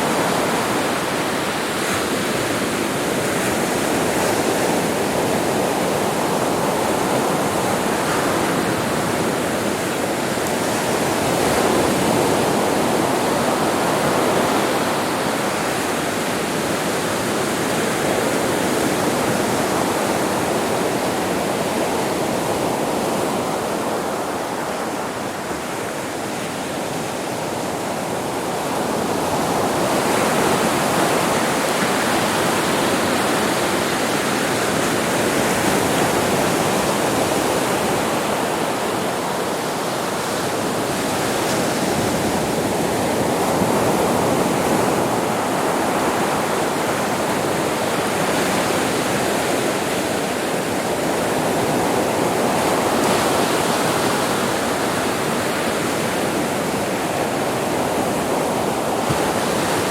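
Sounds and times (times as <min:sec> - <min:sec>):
ocean waves breaking on beach: 0:00.0 - 0:59.9.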